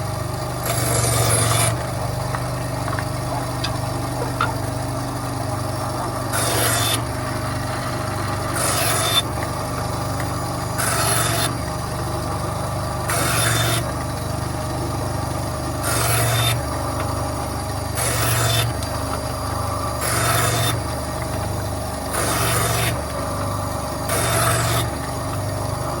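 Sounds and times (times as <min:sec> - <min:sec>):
bandsaw running: 0:00.0 - 0:26.0
bandsaw blade cutting wood: 0:00.6 - 0:02.0, 0:06.0 - 0:12.0, 0:13.0 - 0:14.0, 0:15.7 - 0:16.8, 0:17.9 - 0:26.0.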